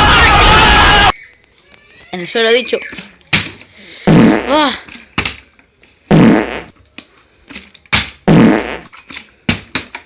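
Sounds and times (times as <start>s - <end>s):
comic fart sound effect: 4.0s - 4.7s, 6.1s - 6.8s, 8.2s - 8.9s.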